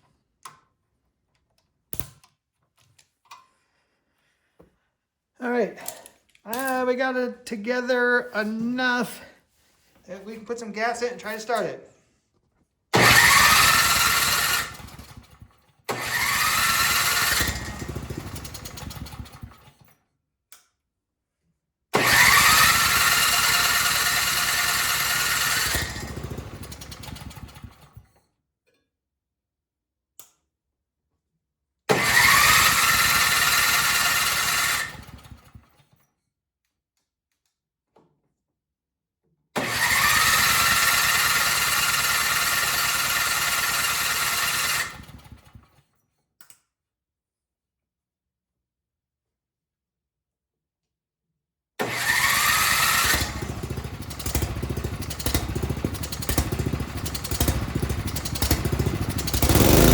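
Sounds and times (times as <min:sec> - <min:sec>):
snowblower engine starting and revving: 0:10.1 - 0:11.8, 0:12.9 - 0:19.9, 0:22.0 - 0:28.2, 0:31.9 - 0:35.8, 0:39.6 - 0:45.8, 0:51.8 - 0:59.9.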